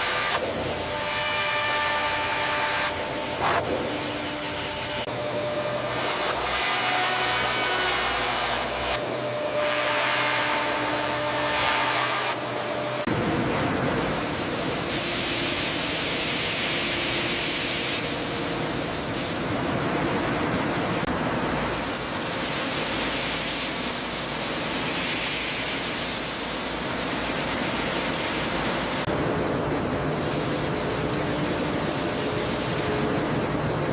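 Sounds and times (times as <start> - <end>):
sawmill machinery rushing: 0.0 - 13.0.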